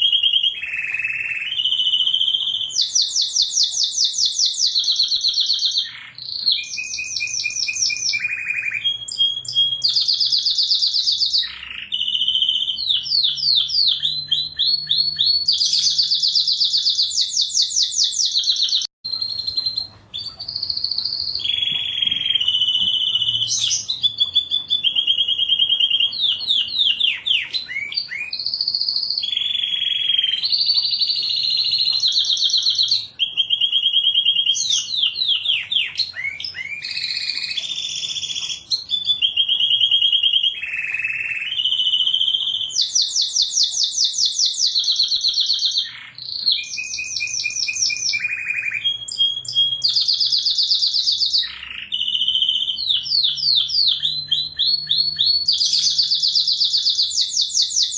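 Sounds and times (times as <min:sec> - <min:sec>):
canary singing trills: 0:00.0 - 0:57.9.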